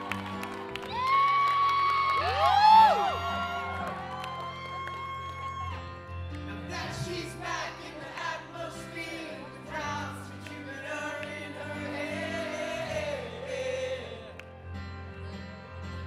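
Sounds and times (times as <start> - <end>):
person singing: 6.5 - 14.5.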